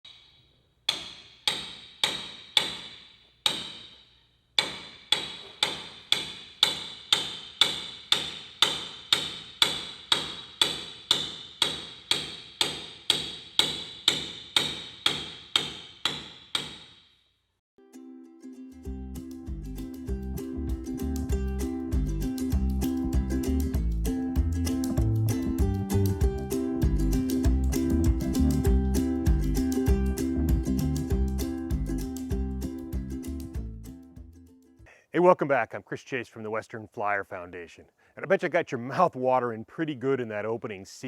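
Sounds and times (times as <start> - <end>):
mallet striking metal iron: 0.1 - 17.1.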